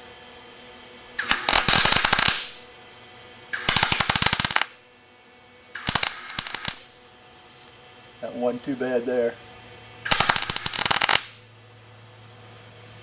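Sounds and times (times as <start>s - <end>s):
welding arc crackling and popping: 1.2s - 2.7s, 3.6s - 4.8s, 5.8s - 7.0s, 10.1s - 11.5s.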